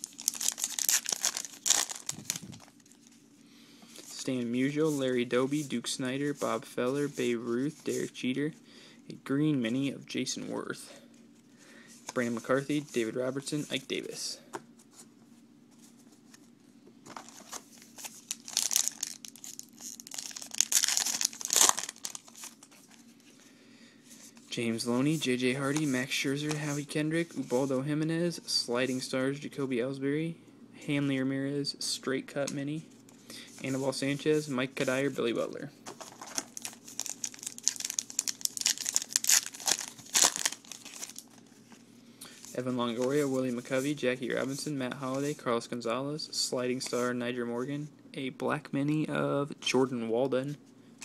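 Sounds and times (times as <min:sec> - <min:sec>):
wrapper tearing and crinkling: 0:00.0 - 0:03.1, 0:17.1 - 0:22.9, 0:36.0 - 0:41.4.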